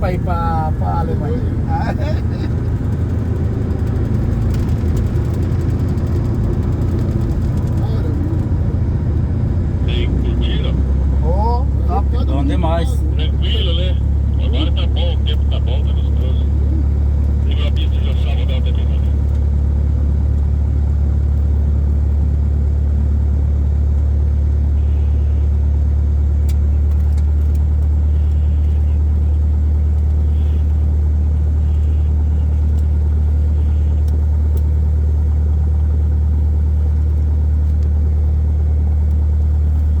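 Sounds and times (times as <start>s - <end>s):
aircraft engine droning: 0.0s - 24.2s.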